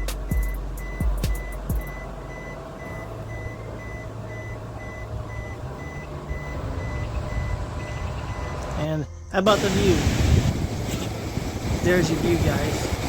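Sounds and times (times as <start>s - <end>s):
bass drum beats of music: 0.0s - 2.2s
short high electronic beeps: 0.3s - 9.4s.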